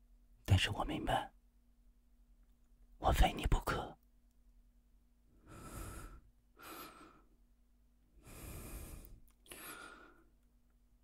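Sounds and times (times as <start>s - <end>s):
man breathing softly: 5.3s - 7.4s, 8.1s - 10.5s.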